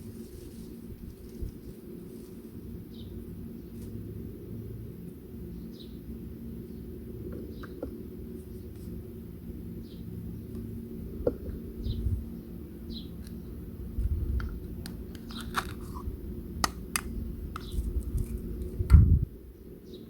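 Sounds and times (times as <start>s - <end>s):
knife crunching through fruit: 15.2s - 16.1s.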